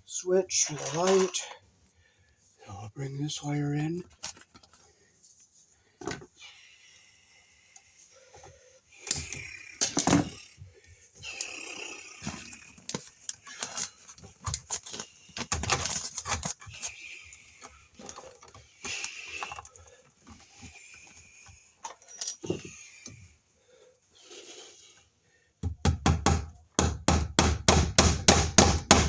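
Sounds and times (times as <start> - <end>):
cable rustling and scraping: 8.0 - 23.3.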